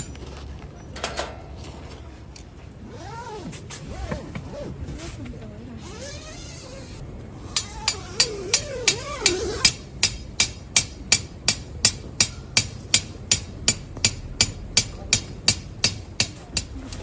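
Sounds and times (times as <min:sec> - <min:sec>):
sharp knocks: 0:07.6 - 0:17.0.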